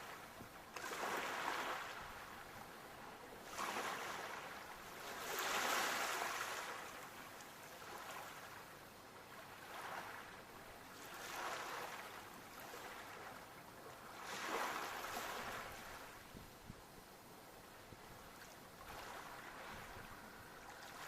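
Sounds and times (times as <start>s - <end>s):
sea waves washing in: 0.0s - 7.1s, 14.0s - 16.4s.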